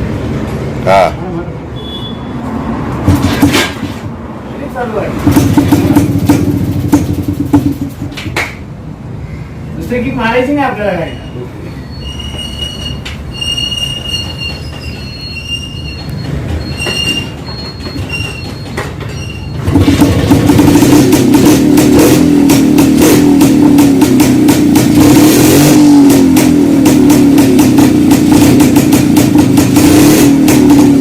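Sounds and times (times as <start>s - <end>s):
high whistling squeal: 1.8s - 2.4s, 11.0s - 19.7s
two-stroke motorcycle engine: 5.2s - 8.2s, 19.5s - 31.0s.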